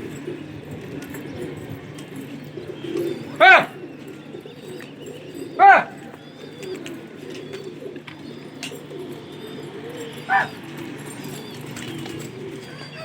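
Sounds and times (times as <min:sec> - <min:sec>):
pigeons cooing: 0:00.0 - 0:13.0
loud rising and falling bird calls: 0:09.1 - 0:13.0.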